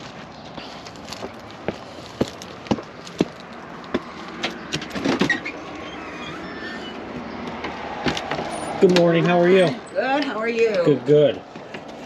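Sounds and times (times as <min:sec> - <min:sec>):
footsteps on hard surface: 0:00.5 - 0:04.9
knocks and clatter: 0:02.7 - 0:05.4, 0:07.4 - 0:09.4.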